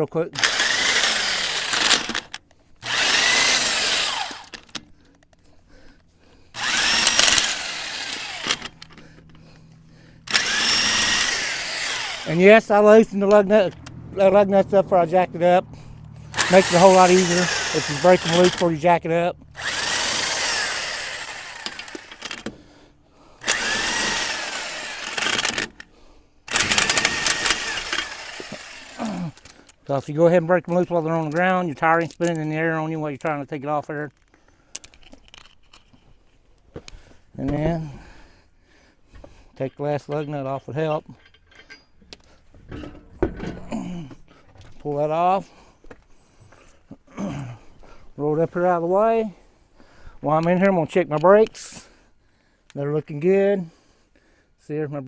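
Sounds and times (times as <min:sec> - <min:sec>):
impact wrench spinning lug nuts: 0:00.3 - 0:33.4
power tool motor whine: 0:00.4 - 0:04.8, 0:06.5 - 0:12.4, 0:15.8 - 0:18.8, 0:19.5 - 0:25.9, 0:26.5 - 0:29.4.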